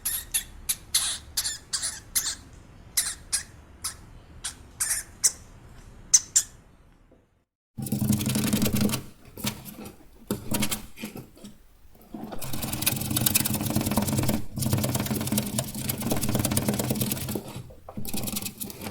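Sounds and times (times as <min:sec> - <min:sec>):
hamster clicking: 0:12.4 - 0:18.9.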